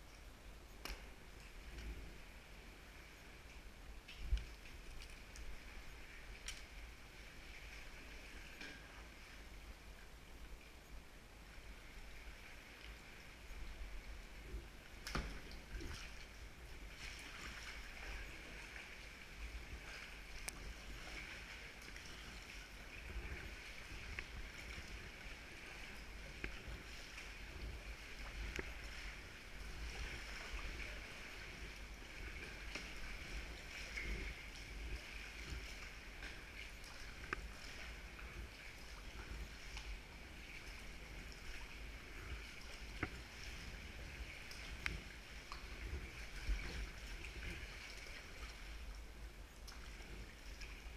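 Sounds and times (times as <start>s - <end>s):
water lapping around kayak: 0.0s - 50.9s.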